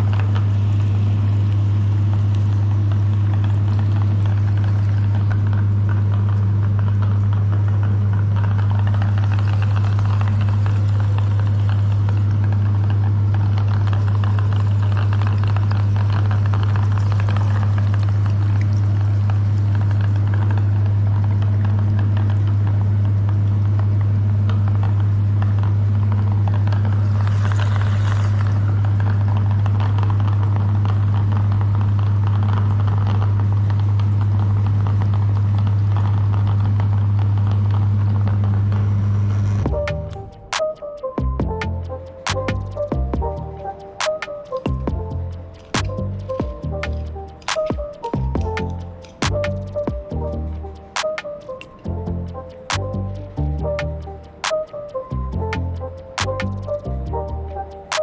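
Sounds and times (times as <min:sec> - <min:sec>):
meat grinder motor humming: 0:00.0 - 0:22.9, 0:24.6 - 0:38.3.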